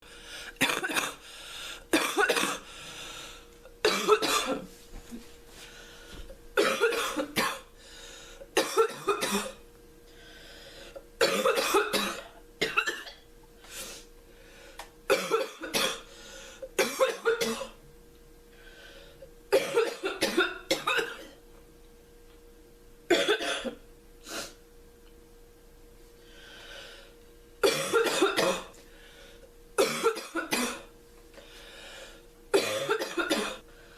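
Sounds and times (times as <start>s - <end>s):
girl coughing: 0.6s - 1.2s, 1.9s - 2.6s, 3.8s - 4.7s, 6.6s - 7.7s, 8.6s - 9.6s, 11.2s - 13.2s, 15.1s - 16.0s, 16.8s - 17.8s, 19.5s - 21.4s, 23.1s - 23.8s, 27.6s - 28.7s, 29.8s - 30.9s, 32.6s - 33.6s.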